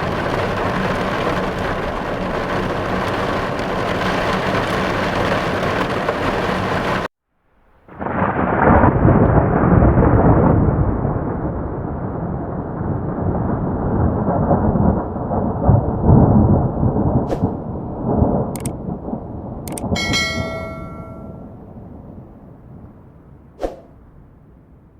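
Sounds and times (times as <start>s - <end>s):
heavy rain hissing: 0.0s - 7.1s
thunder rumbling: 0.0s - 24.8s.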